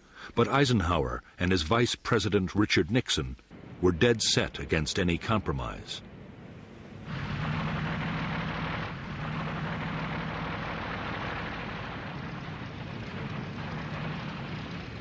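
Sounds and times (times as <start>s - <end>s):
engine drone: 3.5s - 15.0s.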